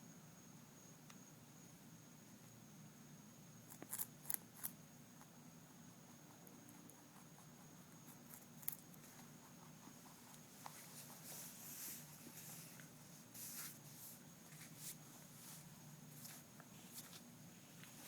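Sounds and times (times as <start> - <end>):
rabbit crunching carrot: 3.6 - 13.0.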